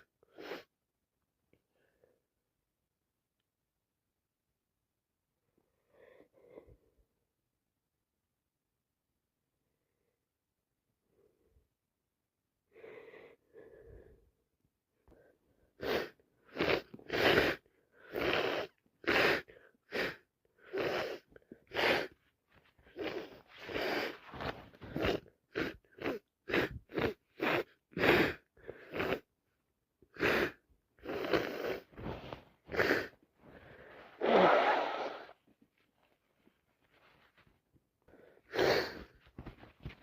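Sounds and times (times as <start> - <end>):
person sneezing: 30.1 - 33.2, 34.0 - 35.4, 38.5 - 39.1.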